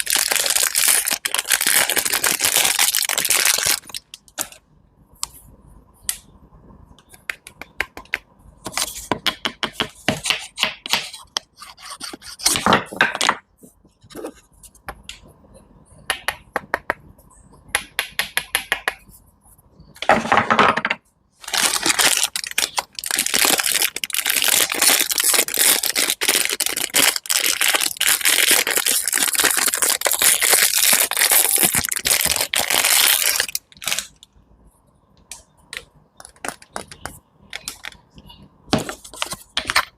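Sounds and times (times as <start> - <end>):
food crunching and crackling: 0.0 - 4.4, 21.4 - 34.2.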